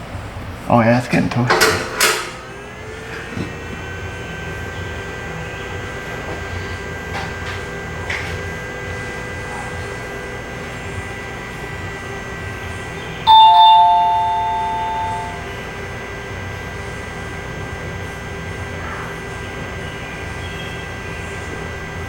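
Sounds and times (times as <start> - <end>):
steady hum: 1.9 - 17.9
two-note doorbell chime: 13.3 - 16.0.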